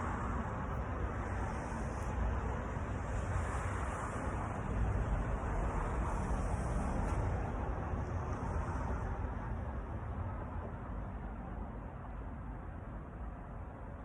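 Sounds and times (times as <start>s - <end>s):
outdoor background rumble: 0.0s - 14.0s.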